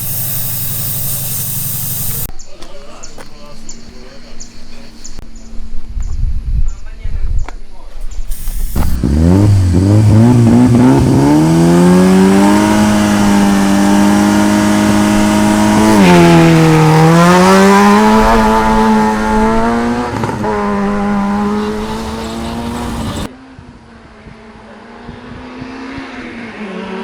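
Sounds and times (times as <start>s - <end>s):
car engine accelerating hard: 8.3s - 23.3s.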